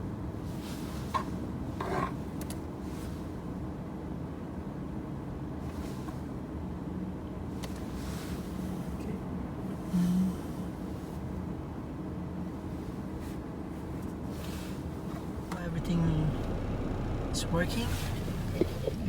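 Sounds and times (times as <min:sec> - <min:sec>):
car engine idling: 0:15.5 - 0:19.0.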